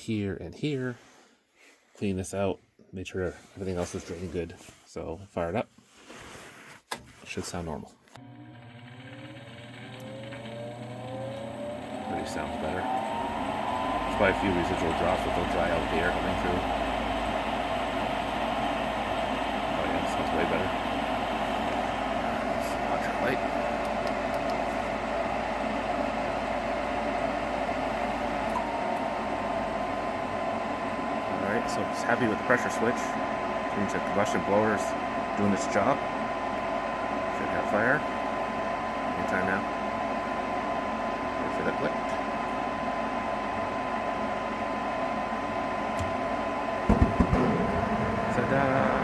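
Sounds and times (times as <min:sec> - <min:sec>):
furnace blower motor running: 0:08.2 - 0:49.0
thin steady whine: 0:10.0 - 0:49.0
low thumps: 0:46.9 - 0:49.0.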